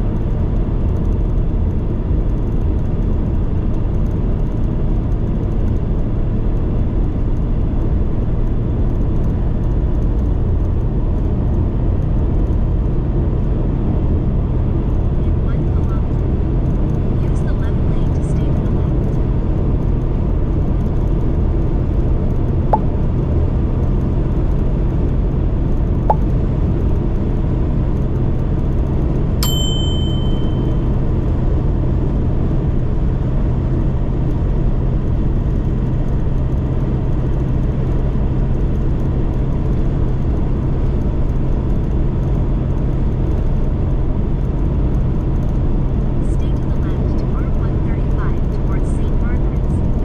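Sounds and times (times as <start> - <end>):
van engine and road noise: 0.0 - 50.0
sharp high ding: 29.4 - 30.9.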